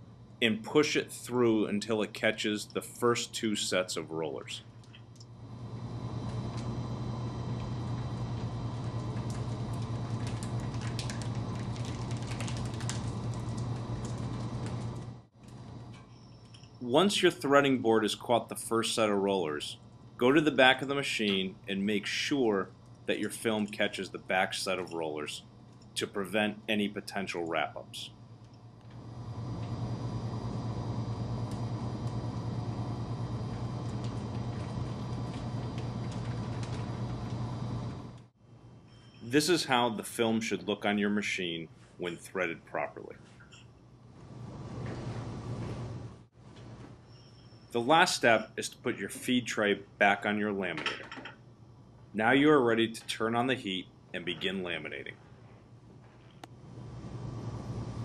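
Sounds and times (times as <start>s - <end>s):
laminator rollers humming: 0.0s - 38.3s, 44.1s - 47.0s
film feeding clicks and crackles: 7.6s - 16.8s, 33.5s - 38.3s.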